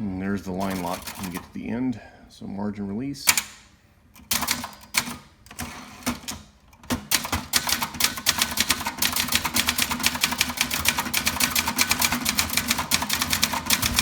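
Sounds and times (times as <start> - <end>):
typewriter typing fast: 0.6 - 1.4, 4.3 - 14.0.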